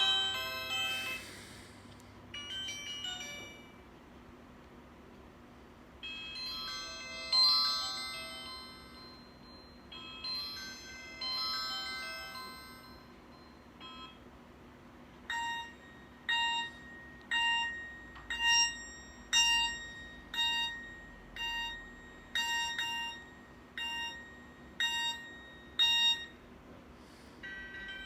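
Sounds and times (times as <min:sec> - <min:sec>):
phone alarm beeping: 0:06.0 - 0:14.3, 0:15.3 - 0:26.5, 0:27.4 - 0:28.0.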